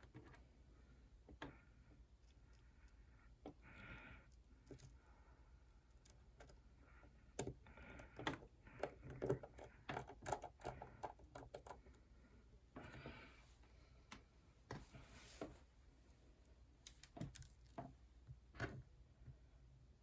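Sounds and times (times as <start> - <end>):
clicks and taps of small parts: 7.4 - 11.8, 16.8 - 18.0.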